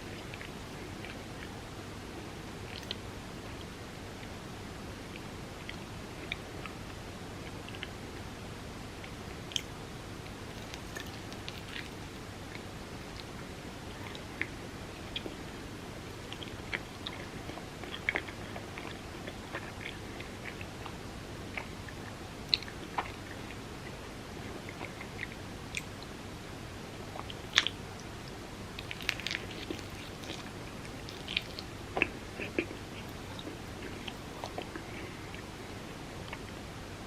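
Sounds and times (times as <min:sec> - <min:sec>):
person chewing food: 0:10.4 - 0:13.3, 0:16.2 - 0:25.9, 0:27.1 - 0:35.6.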